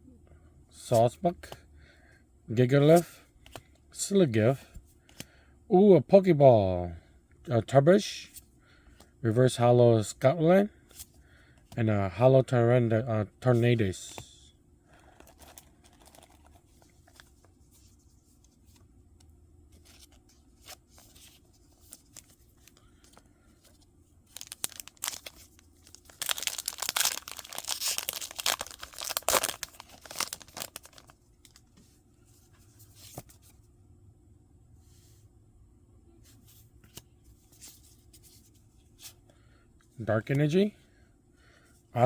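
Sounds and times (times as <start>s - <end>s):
foil wrapper tearing and crinkling: 15.1s - 16.5s, 24.3s - 31.6s.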